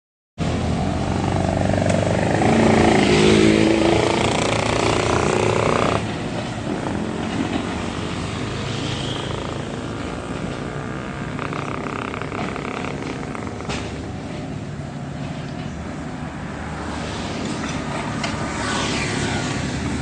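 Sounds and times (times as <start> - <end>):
excavator diesel engine under load: 0.5 - 15.7.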